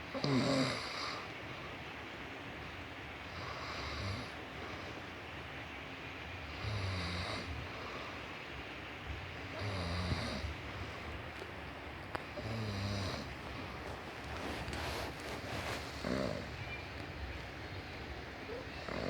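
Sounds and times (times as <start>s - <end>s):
person snoring: 12.4s - 13.3s, 16.0s - 16.5s.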